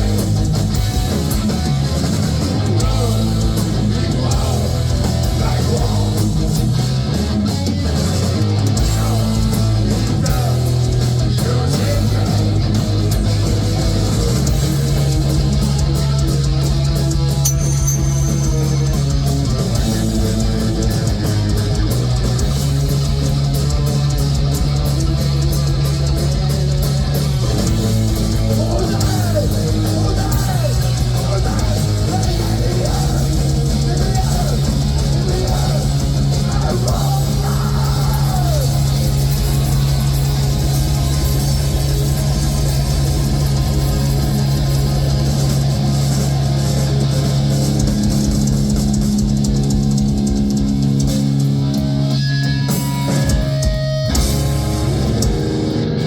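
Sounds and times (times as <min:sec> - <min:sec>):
bass guitar: 0:00.0 - 0:56.0
distorted electric guitars: 0:00.0 - 0:56.0
drum kit: 0:00.0 - 0:56.0
bending guitar notes: 0:12.6 - 0:56.0.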